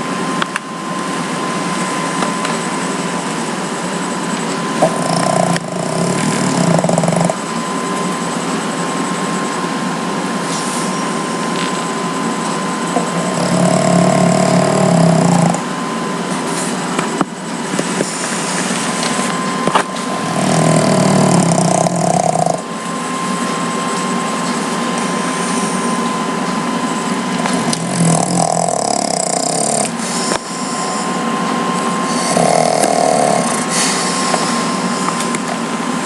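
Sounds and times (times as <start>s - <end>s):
pet snoring: 4.3s - 7.6s, 12.5s - 15.8s, 17.8s - 23.3s, 27.4s - 35.4s.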